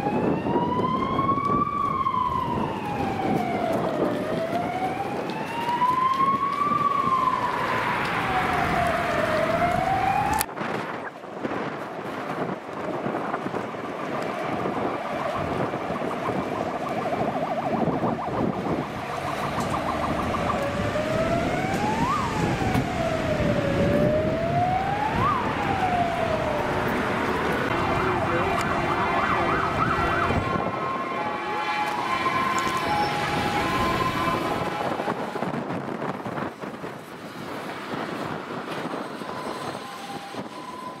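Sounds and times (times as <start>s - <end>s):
electronic siren wailing: 0.0s - 11.2s, 13.5s - 36.1s, 38.1s - 41.0s
fire engine and tyre noise: 0.0s - 41.0s
multi-tone air horn blasts: 31.0s - 33.4s.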